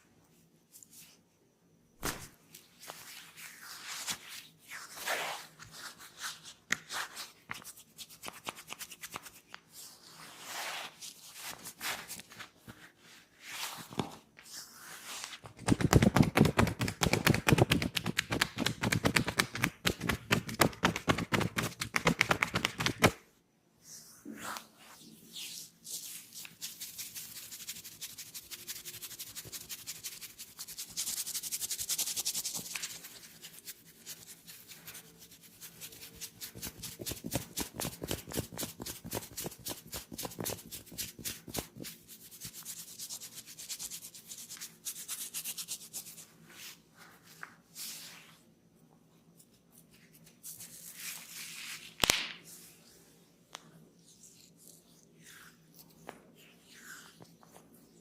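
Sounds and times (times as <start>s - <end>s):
sharp snap: 2.0s - 2.4s, 52.0s - 52.4s
hands rubbing hair: 2.0s - 23.2s, 24.4s - 48.4s.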